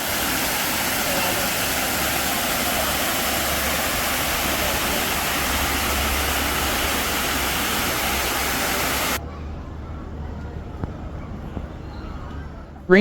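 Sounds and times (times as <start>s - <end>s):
loud rushing noise: 0.0s - 9.2s
low hum: 0.0s - 9.2s.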